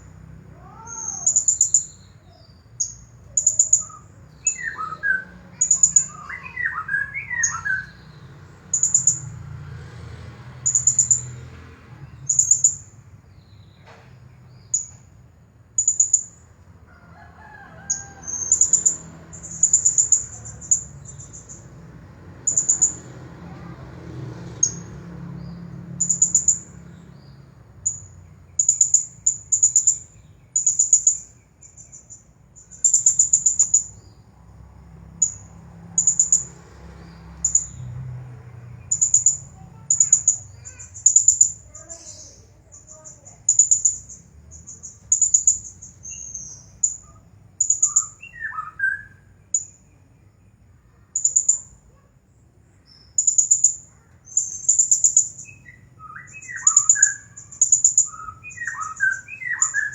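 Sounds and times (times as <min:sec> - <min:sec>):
parrot chirping: 0:00.6 - 0:08.1, 0:38.9 - 0:49.8, 0:53.2 - 0:59.9.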